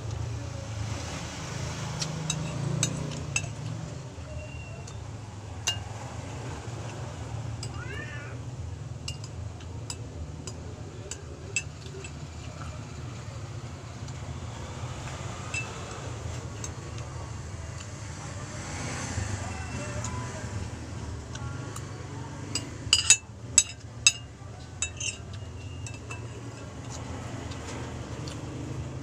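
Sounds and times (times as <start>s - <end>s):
cutlery clinking on a plate: 2.0s - 6.0s, 15.5s - 17.1s, 22.5s - 28.4s
cat meowing: 7.6s - 8.4s.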